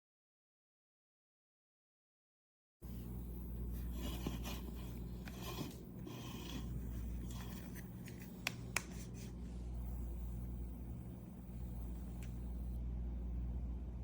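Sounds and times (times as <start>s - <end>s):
steady low hum: 2.8s - 14.0s
rubbing and scraping handling: 2.9s - 9.7s.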